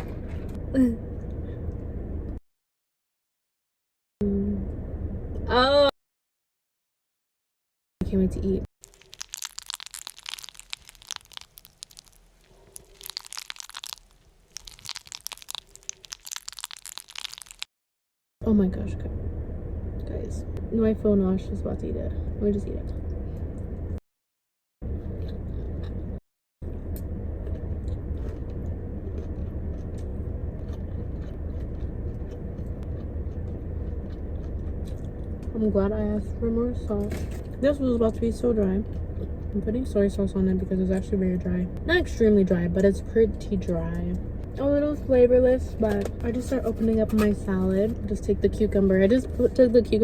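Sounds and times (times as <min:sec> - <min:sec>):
food packaging crinkling: 0:08.8 - 0:17.7.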